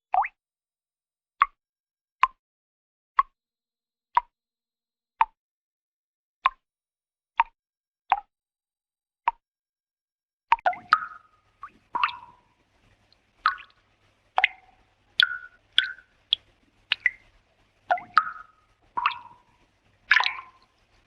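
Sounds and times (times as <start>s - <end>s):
cartoon water drops plinking: 10.5s - 12.5s, 13.5s - 13.8s, 14.4s - 17.3s, 17.9s - 20.7s.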